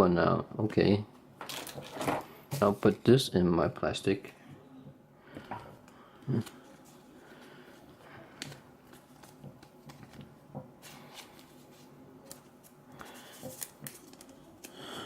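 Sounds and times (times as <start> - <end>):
trading cards rustling and tapping: 5.4 - 14.9.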